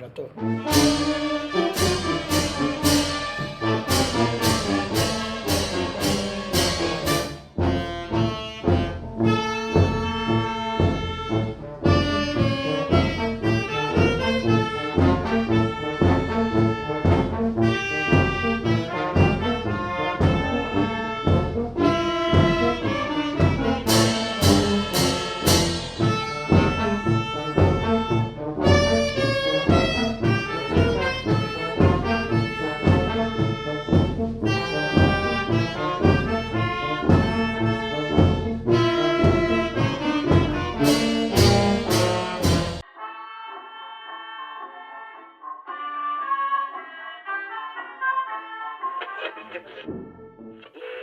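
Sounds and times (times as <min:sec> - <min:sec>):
brass band playing: 0:00.0 - 0:42.9
cymbal strikes: 0:00.7 - 0:07.4, 0:23.9 - 0:26.6.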